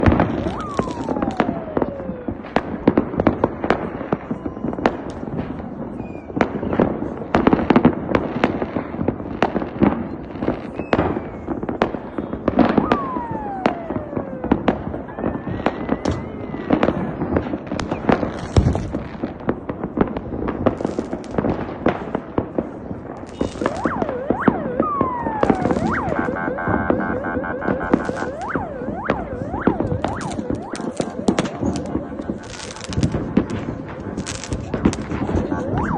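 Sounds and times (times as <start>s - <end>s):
falling firework whistles: 0.0s - 1.9s, 5.9s - 6.9s, 10.7s - 11.5s, 12.6s - 16.8s, 23.3s - 35.9s
fireworks bangs and pops: 0.0s - 35.9s.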